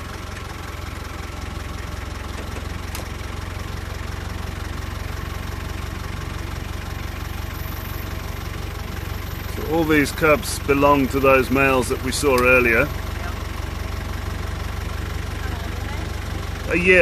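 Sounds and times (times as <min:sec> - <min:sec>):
vehicle engine idling: 0:00.0 - 0:17.0.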